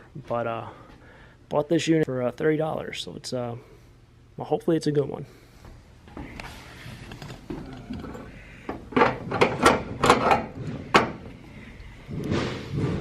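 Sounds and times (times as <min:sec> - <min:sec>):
door lock clicking and knocking: 0:08.9 - 0:11.2.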